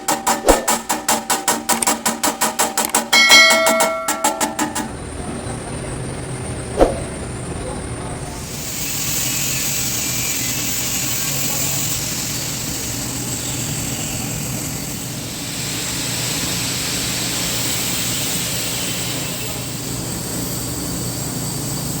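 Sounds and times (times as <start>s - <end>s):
welding arc hissing and buzzing: 8.4s - 22.0s.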